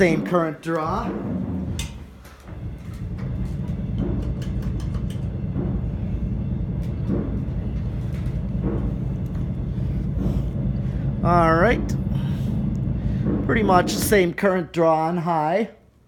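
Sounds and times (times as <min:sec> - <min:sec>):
ceiling fan running: 0:00.0 - 0:16.0.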